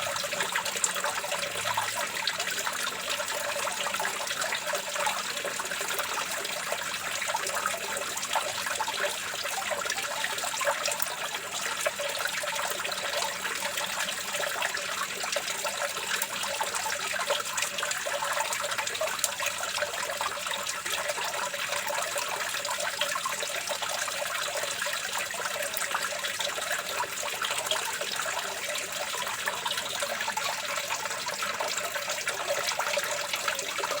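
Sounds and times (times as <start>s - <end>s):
water running and trickling: 0.0s - 34.0s.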